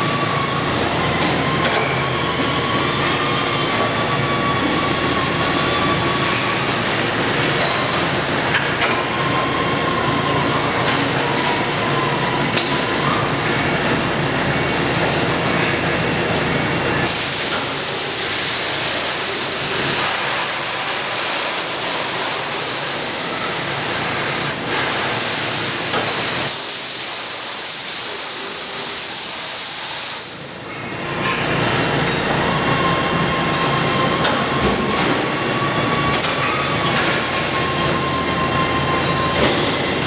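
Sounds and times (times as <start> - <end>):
machinery running: 0.0 - 29.5, 30.4 - 40.0.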